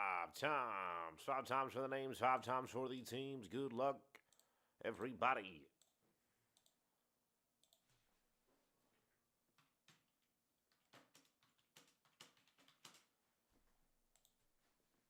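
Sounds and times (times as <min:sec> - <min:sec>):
computer mouse clicks: 0:06.6 - 0:06.8, 0:07.6 - 0:07.9, 0:14.1 - 0:14.4.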